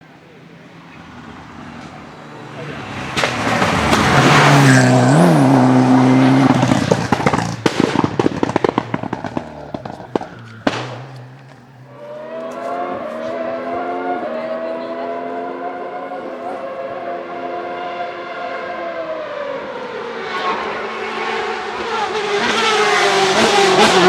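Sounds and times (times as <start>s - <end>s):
racing car engine at full throttle: 0.0s - 24.0s
exhaust cracks and pops: 3.0s - 12.6s
sharp exhaust bang: 3.1s - 13.8s.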